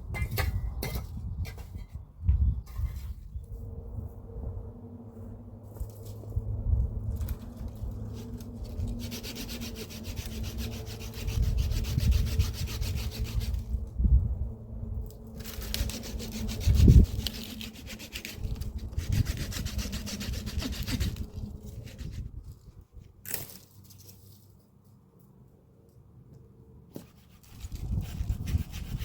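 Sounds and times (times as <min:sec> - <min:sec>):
rough scraping: 0:07.0 - 0:13.9, 0:15.3 - 0:24.6, 0:26.9 - 0:29.0.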